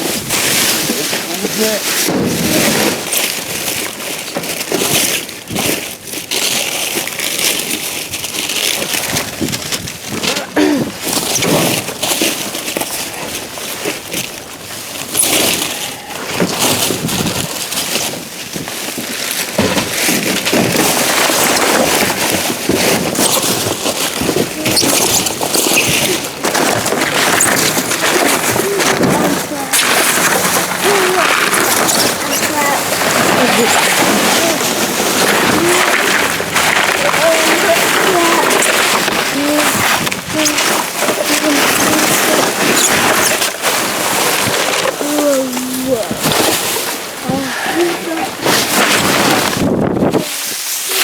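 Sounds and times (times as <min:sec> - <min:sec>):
trash rustling and crackling: 0:00.0 - 0:51.0
wind noise on microphone: 0:08.9 - 0:12.0, 0:15.3 - 0:19.1, 0:19.8 - 0:45.2, 0:45.8 - 0:50.8.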